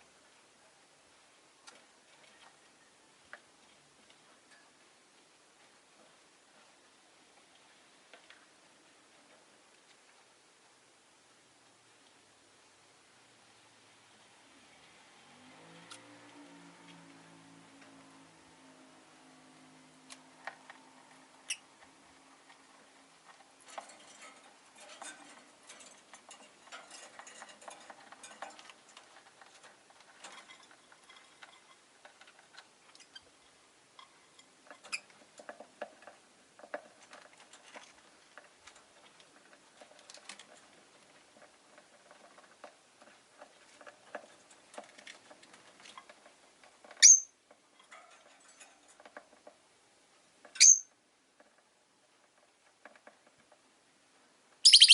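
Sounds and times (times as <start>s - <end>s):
birds moving in cage: 14.4s - 49.6s, 50.3s - 53.7s
small clicks and scratches: 19.8s - 49.6s, 51.3s - 53.7s
bird chirping: 47.0s - 47.3s, 50.6s - 50.9s, 54.6s - 54.9s.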